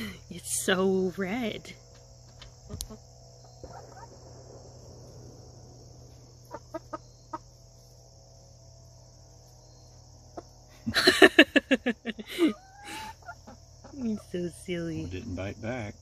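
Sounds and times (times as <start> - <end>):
insect chirring: 0.1 - 16.0
hens squawking: 6.4 - 7.4, 12.3 - 14.4
hens clucking: 6.4 - 7.6, 10.3 - 10.6, 12.1 - 15.3.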